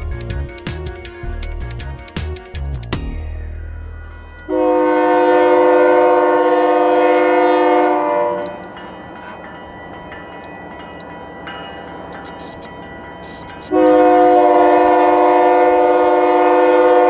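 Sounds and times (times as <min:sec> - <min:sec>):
train rolling: 0:00.0 - 0:16.0
locomotive air horn: 0:03.8 - 0:08.6, 0:13.7 - 0:17.0.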